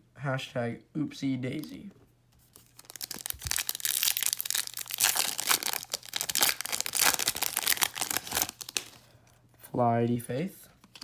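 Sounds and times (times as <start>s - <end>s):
wrapper crinkling: 2.5s - 9.1s.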